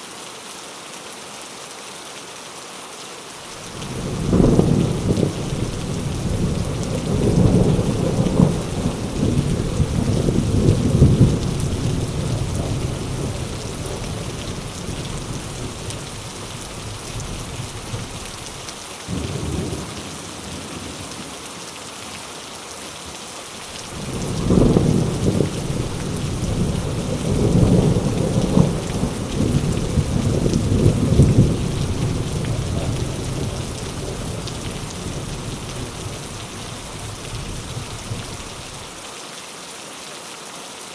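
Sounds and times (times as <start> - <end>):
heavy rain falling: 0.0 - 40.9
rolling thunder: 3.7 - 19.9, 23.8 - 38.8.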